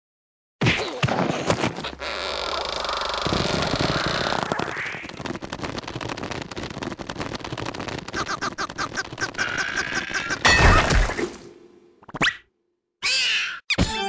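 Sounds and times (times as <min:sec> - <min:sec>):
cartoon rattling and clattering: 0:03.2 - 0:10.4
chirpy squeaks: 0:12.2 - 0:13.8.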